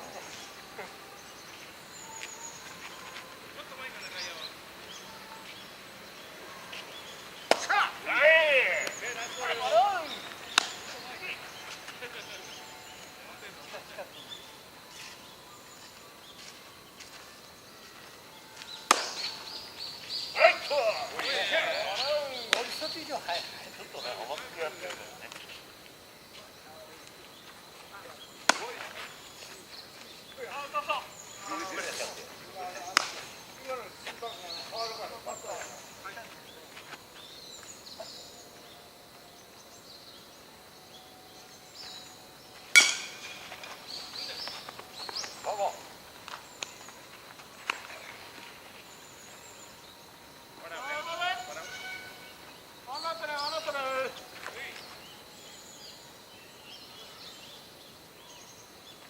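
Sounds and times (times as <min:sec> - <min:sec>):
faint high chirps: 0:00.0 - 0:25.6
baseball bat crack: 0:07.4 - 0:08.0, 0:10.5 - 0:11.0, 0:18.9 - 0:19.3, 0:28.4 - 0:29.0, 0:32.9 - 0:33.4, 0:42.7 - 0:43.8
sharp ringing bat crack: 0:18.9 - 0:19.4, 0:42.7 - 0:43.5.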